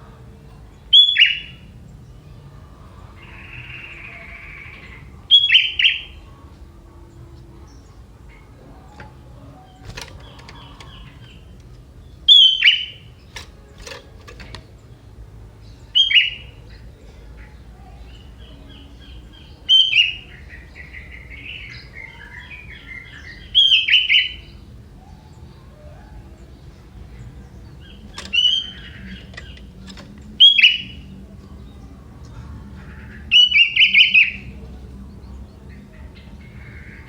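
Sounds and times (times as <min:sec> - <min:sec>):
soft bird twittering: 0:00.0 - 0:37.0
bird singing short phrases: 0:00.7 - 0:01.7, 0:07.7 - 0:14.8, 0:15.6 - 0:37.0.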